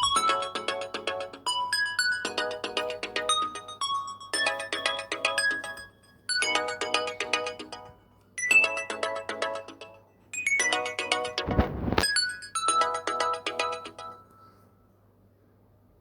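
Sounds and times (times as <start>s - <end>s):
phone ringtone melody: 0.0s - 14.5s
noisy rush: 11.4s - 12.0s.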